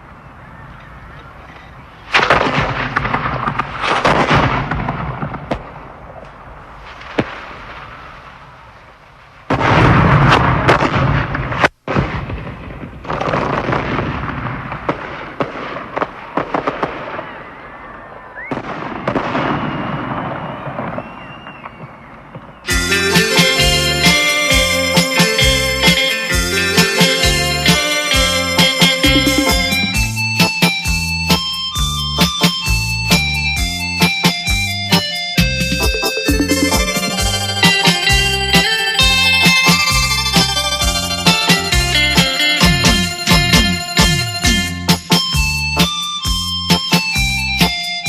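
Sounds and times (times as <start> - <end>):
fireworks crackling and banging: 1.5 - 47.9
firework whistles: 17.0 - 23.2
keyboard music: 22.7 - 48.0.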